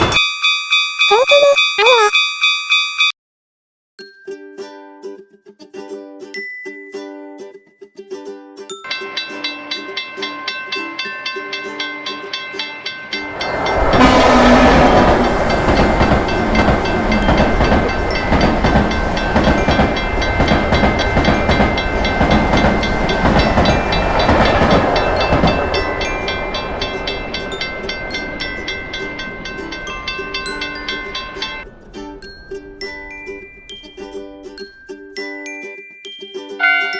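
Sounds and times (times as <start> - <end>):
railroad crossing bell ringing: 0.0 - 3.1, 8.9 - 34.9, 36.6 - 36.9
train wheels clattering on rails: 9.0 - 31.8.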